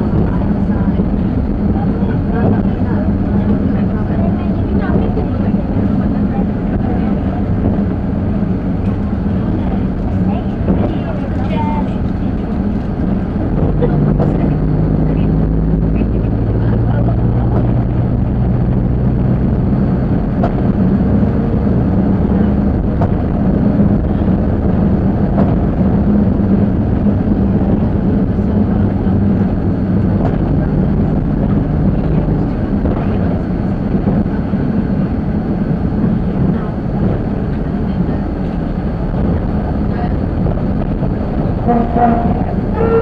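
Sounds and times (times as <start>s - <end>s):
diesel engine droning: 0.0s - 43.0s
wheels rumbling on track: 0.0s - 43.0s.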